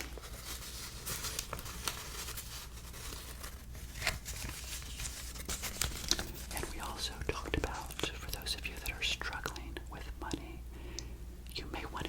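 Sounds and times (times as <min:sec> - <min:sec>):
banknotes crinkling and rustling: 0:00.0 - 0:08.9.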